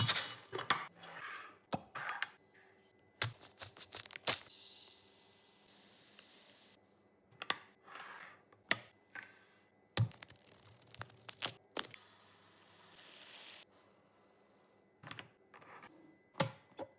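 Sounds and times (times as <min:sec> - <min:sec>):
items clicking and knocking: 0:00.0 - 0:00.9.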